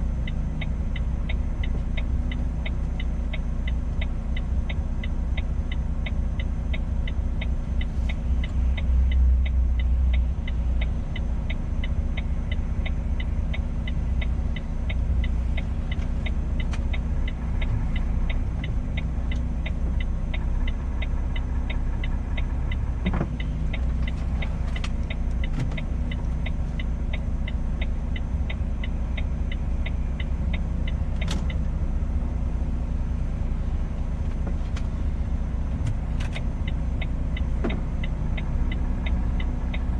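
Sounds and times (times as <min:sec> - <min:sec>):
truck engine and road noise: 0:00.0 - 0:39.9.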